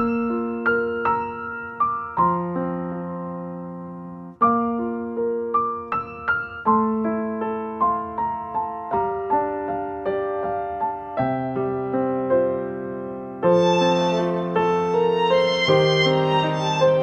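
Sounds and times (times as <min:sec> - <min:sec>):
slow piano piece: 0:00.0 - 0:17.0.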